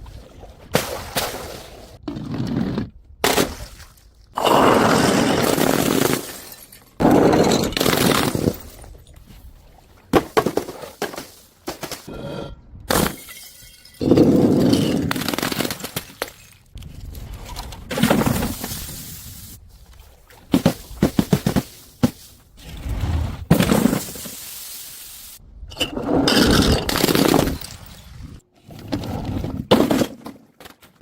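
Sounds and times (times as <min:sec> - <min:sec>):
glass bottles shattering: 0:05.5 - 0:09.0, 0:12.9 - 0:16.7.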